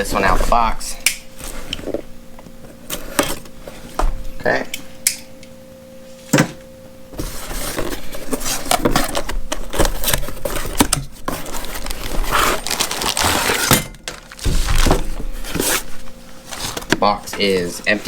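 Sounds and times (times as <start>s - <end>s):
cardboard rustling and scraping: 0.0s - 0.8s, 7.1s - 18.0s.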